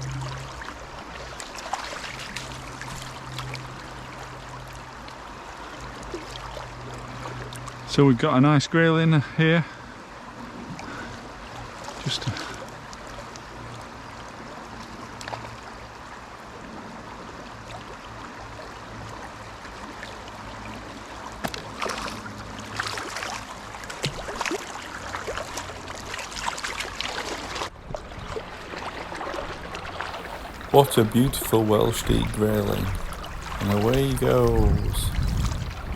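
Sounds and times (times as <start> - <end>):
close splashes and drips: 0.0 - 7.9, 10.4 - 35.9
fast-flowing river water: 0.0 - 7.9, 9.0 - 35.9.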